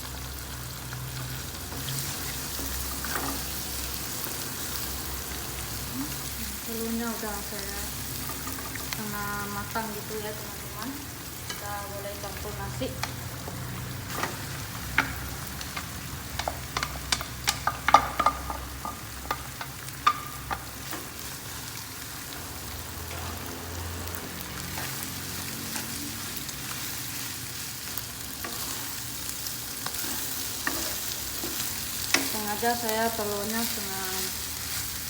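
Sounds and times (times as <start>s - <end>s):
rice sizzling in pan: 0.0s - 35.0s.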